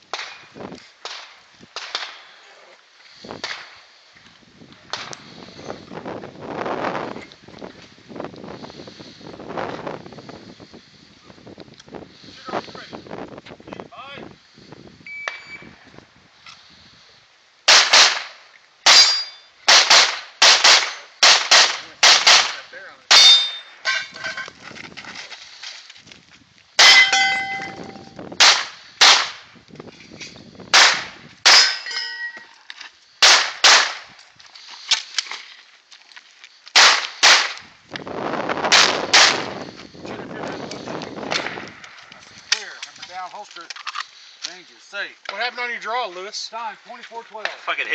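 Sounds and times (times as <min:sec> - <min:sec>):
pistol shots: 0:17.7 - 0:23.6, 0:28.4 - 0:29.4, 0:30.7 - 0:31.8, 0:33.2 - 0:34.1, 0:36.8 - 0:37.6, 0:38.7 - 0:39.5
metallic rings of steel targets: 0:18.9 - 0:19.5, 0:23.1 - 0:24.4, 0:26.8 - 0:28.2, 0:31.5 - 0:32.6.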